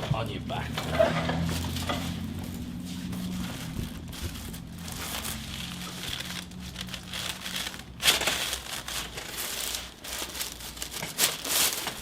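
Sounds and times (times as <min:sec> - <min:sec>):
crinkling and rustling on table: 0:00.7 - 0:12.0.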